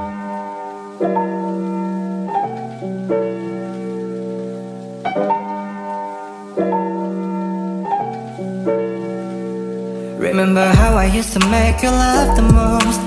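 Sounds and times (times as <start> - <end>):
keyboard chords: 0.0 - 13.0.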